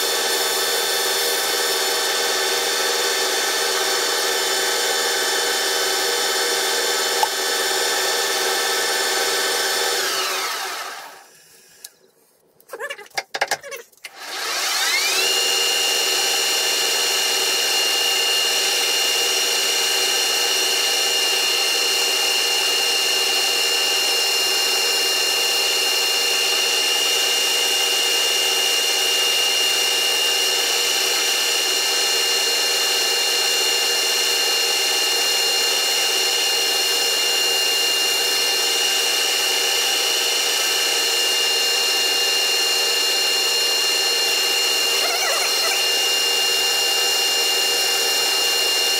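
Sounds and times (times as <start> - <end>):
metal lathe whining: 14.2 - 19.8, 34.7 - 48.9.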